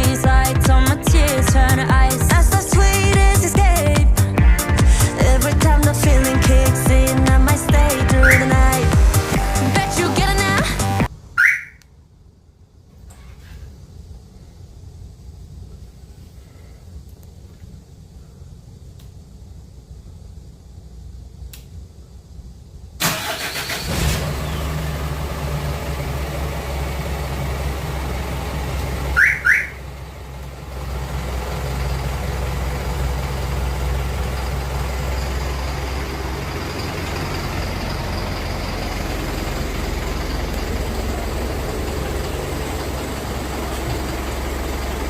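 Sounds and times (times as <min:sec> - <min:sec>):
diesel engine starting and idling: 0:00.0 - 0:11.8, 0:22.9 - 0:45.0
rising electronic chirps: 0:07.8 - 0:11.8, 0:29.2 - 0:29.8.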